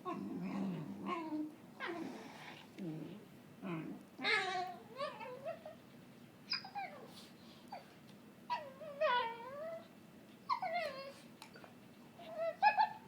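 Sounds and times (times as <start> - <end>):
dog whining: 3.0 - 5.8, 6.5 - 7.9, 8.5 - 9.9, 10.5 - 13.0.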